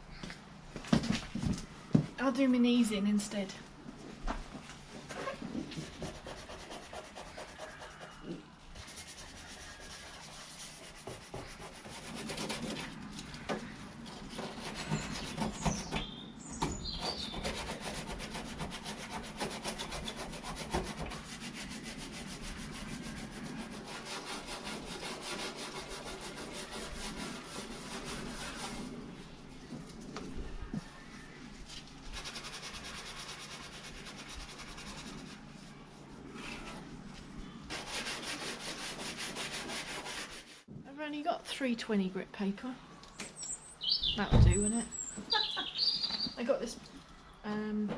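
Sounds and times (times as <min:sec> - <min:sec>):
sandpaper rubbing on metal: 0:05.2 - 0:08.2, 0:08.8 - 0:13.1, 0:16.8 - 0:29.0, 0:32.0 - 0:36.8, 0:37.7 - 0:40.6.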